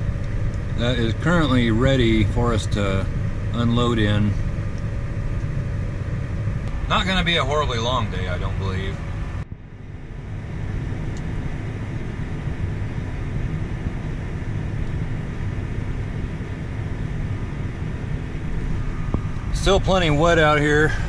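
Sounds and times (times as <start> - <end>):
faint steady hum: 0.0 - 21.0
vehicle engine running: 0.0 - 21.0.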